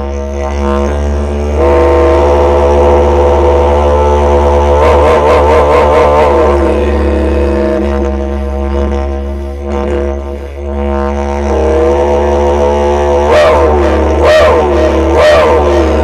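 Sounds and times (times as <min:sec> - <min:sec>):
didgeridoo drone: 0:00.0 - 0:16.0.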